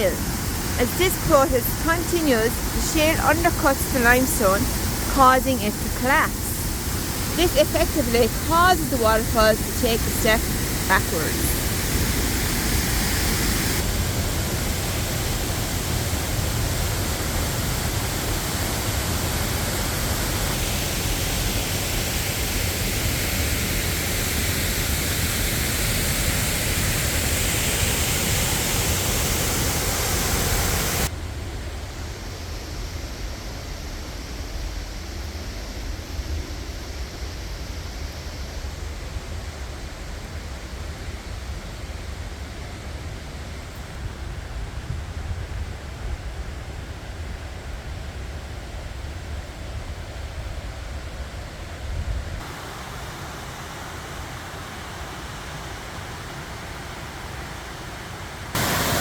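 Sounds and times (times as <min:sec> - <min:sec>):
waterfall rushing: 0:00.0 - 0:22.3, 0:52.4 - 0:59.0.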